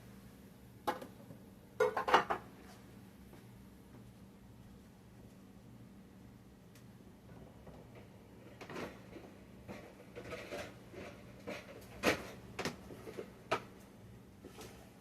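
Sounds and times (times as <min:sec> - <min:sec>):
kitchen items knocking and clattering: 0:01.8 - 0:02.5, 0:07.3 - 0:13.8.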